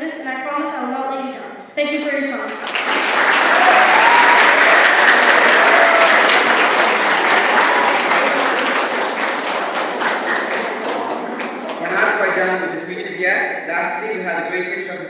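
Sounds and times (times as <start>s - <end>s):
audience applauding: 2.5s - 12.6s.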